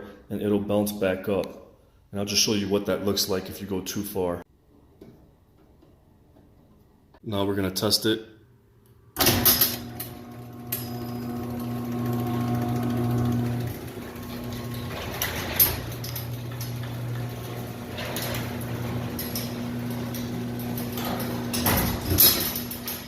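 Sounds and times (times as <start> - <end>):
garage door opener motor humming: 9.2 - 23.0.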